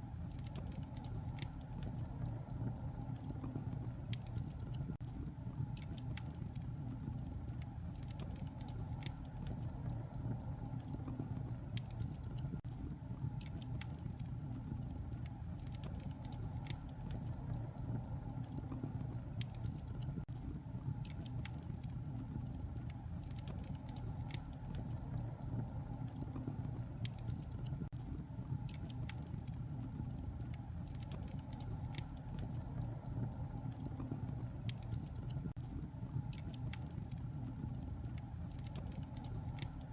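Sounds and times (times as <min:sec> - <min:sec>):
fire crackling and popping: 0:00.0 - 0:39.9
low rumble of flames: 0:00.0 - 0:39.9.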